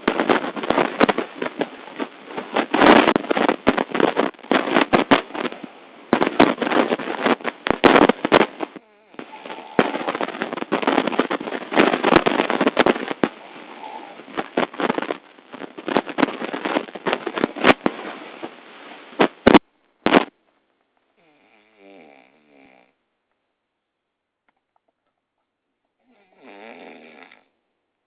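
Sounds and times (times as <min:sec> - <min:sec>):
loud snoring with rattle: 0:21.2 - 0:23.0, 0:26.0 - 0:27.6.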